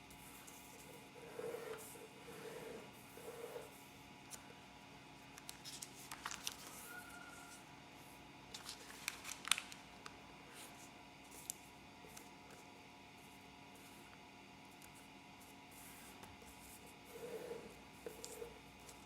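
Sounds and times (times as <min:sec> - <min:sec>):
steady low hum: 0:00.0 - 0:06.9, 0:07.5 - 0:19.0
paper crinkling and rustling: 0:05.4 - 0:07.6, 0:08.5 - 0:12.7.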